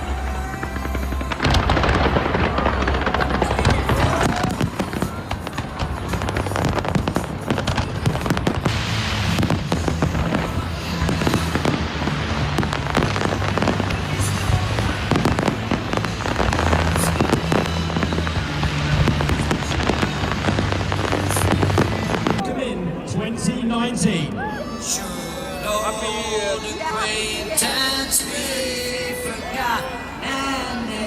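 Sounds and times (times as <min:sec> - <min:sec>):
fireworks bursting and crackling: 0:00.0 - 0:22.5.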